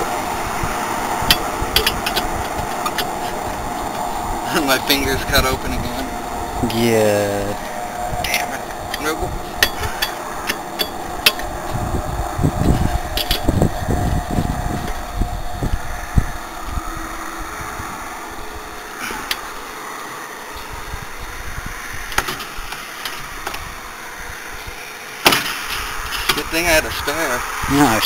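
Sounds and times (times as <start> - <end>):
highway traffic rushing: 0.0 - 28.0
low traffic rumble: 0.0 - 28.0.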